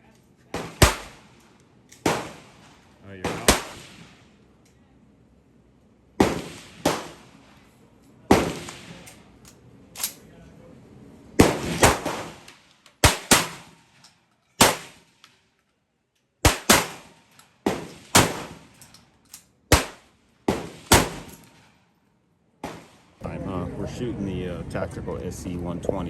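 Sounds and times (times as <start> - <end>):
shotgun shots with echo: 0.6 - 1.4, 2.0 - 4.2, 6.2 - 7.3, 8.3 - 9.1, 11.4 - 13.8, 14.6 - 15.1, 16.4 - 18.8, 19.7 - 21.7, 22.6 - 23.2.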